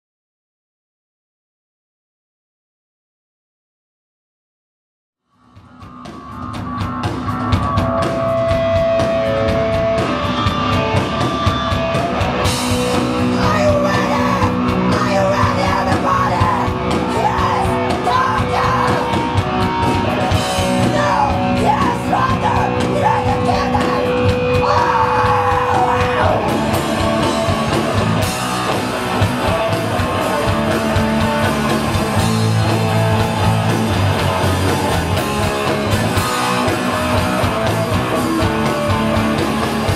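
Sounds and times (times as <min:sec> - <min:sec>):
live heavy rock band: 0:05.5 - 0:39.9
yelled and sung vocals: 0:12.8 - 0:39.9.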